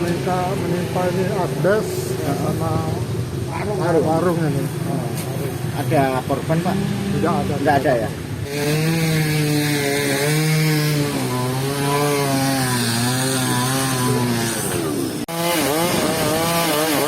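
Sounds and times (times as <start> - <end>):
chainsaw cutting tree trunk: 8.4 - 17.0
chainsaw revving: 8.4 - 17.0.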